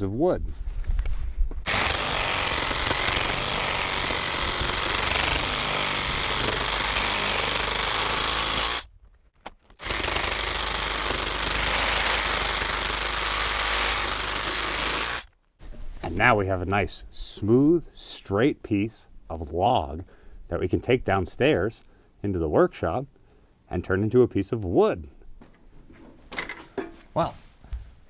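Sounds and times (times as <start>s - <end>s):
power saw cutting log: 1.7s - 8.9s, 9.8s - 15.3s.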